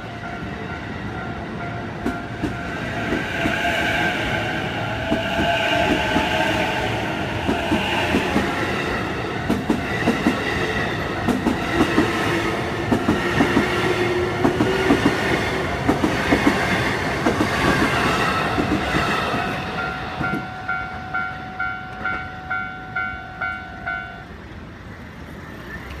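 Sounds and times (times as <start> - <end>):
level crossing warning bell: 19.4 - 24.5.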